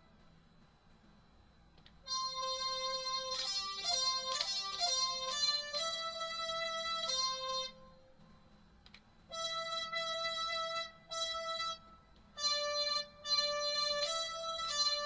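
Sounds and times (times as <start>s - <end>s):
digital wind instrument notes: 2.1s - 7.9s, 9.3s - 15.0s.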